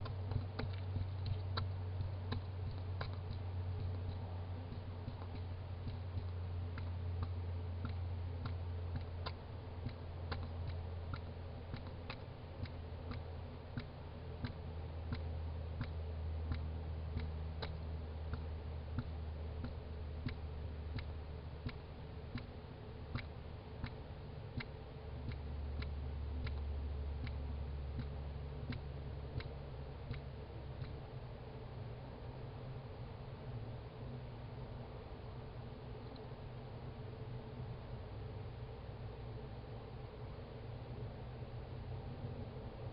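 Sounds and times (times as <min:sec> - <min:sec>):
hedgehog clicking: 0:00.0 - 0:31.6
low steady hum: 0:00.0 - 0:42.9.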